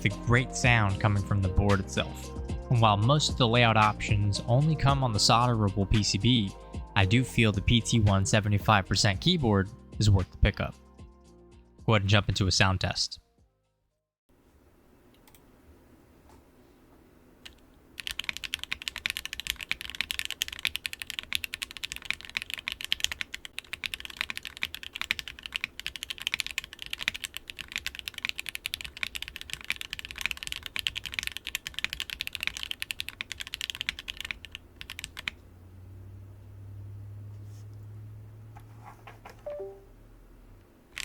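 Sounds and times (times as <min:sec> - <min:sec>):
fast mechanical keyboard typing: 0:17.4 - 0:35.4.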